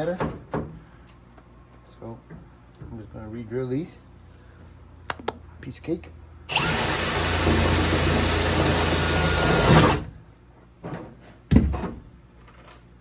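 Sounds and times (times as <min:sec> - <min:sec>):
power drill boring: 0:06.5 - 0:10.1.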